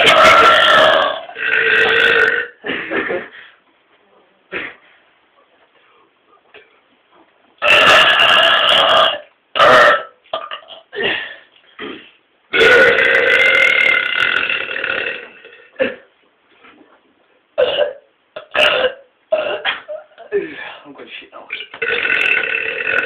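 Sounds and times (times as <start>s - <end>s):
men burping loudly: 0.0s - 3.4s, 7.6s - 11.2s, 11.8s - 16.1s, 17.6s - 20.4s, 21.5s - 23.0s.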